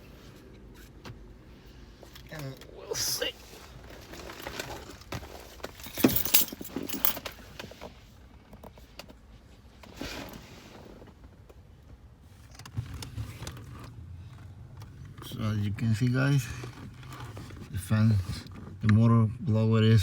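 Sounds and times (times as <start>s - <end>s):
metal and plastic parts rattling: 3.9s - 7.6s.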